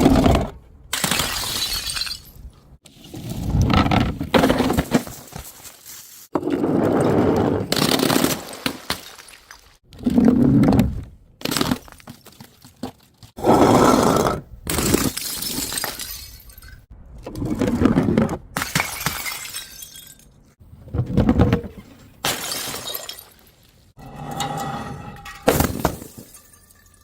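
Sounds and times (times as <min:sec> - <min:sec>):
glass bottles smashing: 0:01.0 - 0:02.5, 0:14.9 - 0:16.9, 0:18.6 - 0:20.4, 0:22.2 - 0:23.8, 0:25.2 - 0:27.0.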